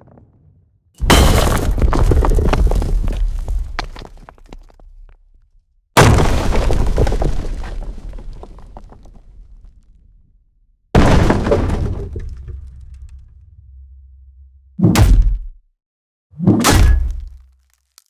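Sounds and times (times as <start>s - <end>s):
crackles of breaking debris: 1.0s - 5.3s, 6.0s - 10.0s, 11.0s - 13.3s, 17.0s - 18.0s
hammer smash impact with boom: 14.8s - 15.6s, 16.4s - 17.4s.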